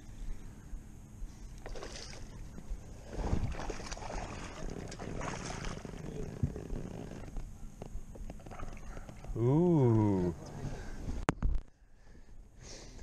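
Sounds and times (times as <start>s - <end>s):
water splashing: 1.6s - 6.4s.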